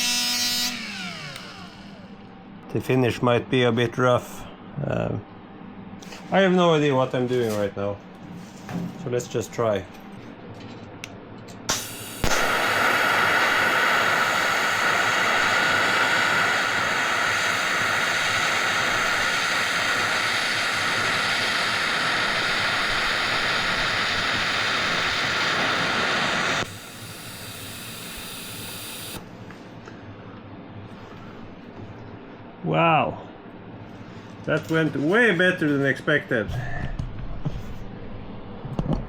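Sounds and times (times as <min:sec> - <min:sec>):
welding arc crackle: 0:11.7 - 0:29.2
welding arc hiss: 0:11.7 - 0:29.2.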